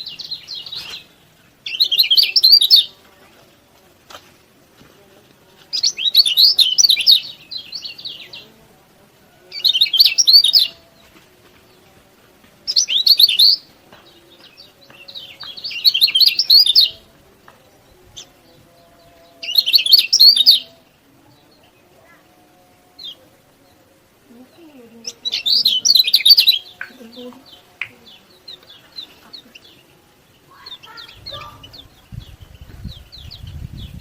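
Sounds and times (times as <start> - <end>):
bird chattering chirps: 1.7 - 2.9, 30.5 - 32.3.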